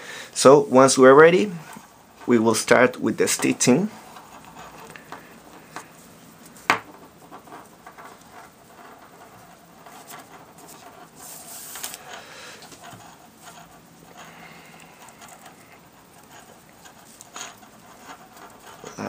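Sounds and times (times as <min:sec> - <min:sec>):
cord rustling and scraping: 0:00.6 - 0:19.0
hiss of cord sliding: 0:10.7 - 0:12.8.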